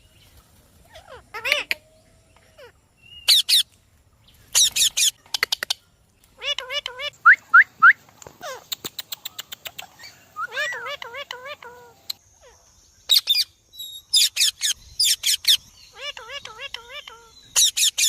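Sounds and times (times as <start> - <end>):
parrot squawking and whistling: 10.4 - 12.0.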